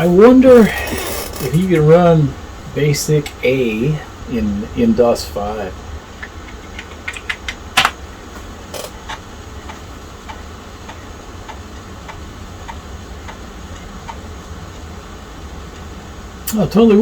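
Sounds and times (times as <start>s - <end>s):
low steady hum: 0.0s - 17.0s
keyboard key clicks: 6.2s - 8.0s.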